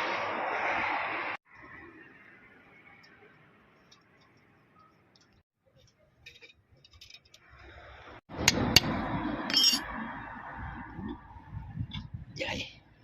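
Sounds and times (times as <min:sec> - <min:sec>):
metal parts clinking: 0:06.2 - 0:07.4, 0:09.5 - 0:09.8.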